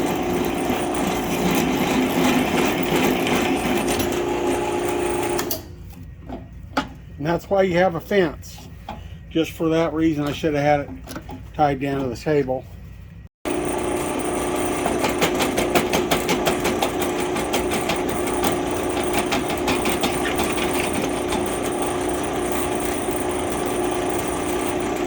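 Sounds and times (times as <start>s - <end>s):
machine tool cutting metal: 0.0s - 5.6s, 13.5s - 25.0s.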